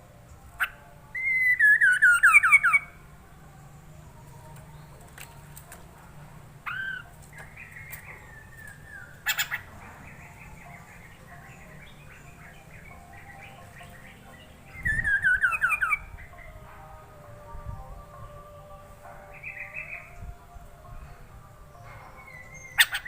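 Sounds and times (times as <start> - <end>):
bird singing whistles and chatter: 0.6 - 3.0, 6.6 - 16.4, 21.8 - 23.0.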